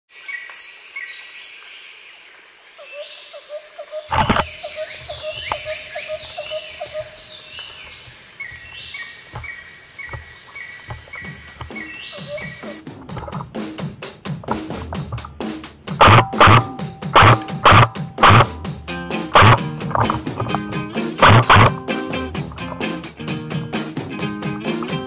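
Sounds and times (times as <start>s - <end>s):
insects buzzing: 0.2s - 25.0s
birds chirping: 2.8s - 25.0s
loud knock: 16.0s - 18.7s, 19.4s - 21.8s.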